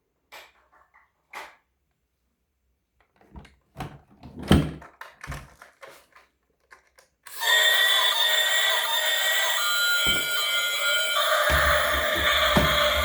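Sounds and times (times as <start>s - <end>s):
music: 7.3s - 13.0s
objects knocking and thumping: 10.0s - 10.4s, 11.2s - 13.0s.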